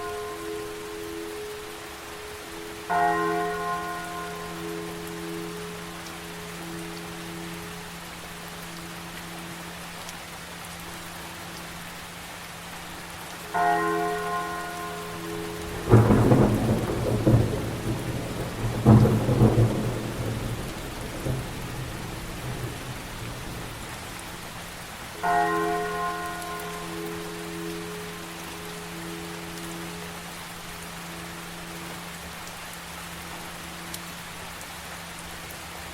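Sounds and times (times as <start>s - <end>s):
steady rain: 0.0s - 35.9s
heavy thunder crashes: 15.6s - 23.9s.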